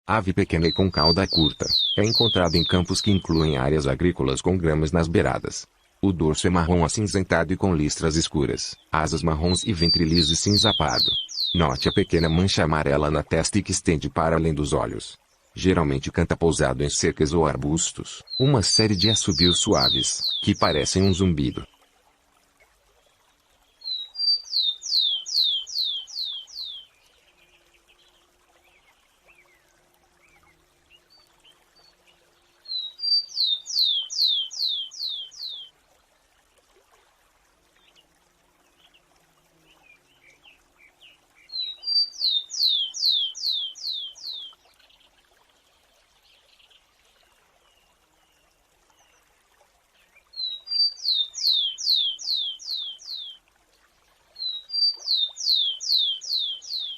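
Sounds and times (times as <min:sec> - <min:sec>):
sparrow singing: 0:00.4 - 0:03.7, 0:09.0 - 0:12.6, 0:18.3 - 0:21.7, 0:23.8 - 0:26.9, 0:32.7 - 0:35.7, 0:41.4 - 0:44.5, 0:50.4 - 0:53.4, 0:54.4 - 0:56.9.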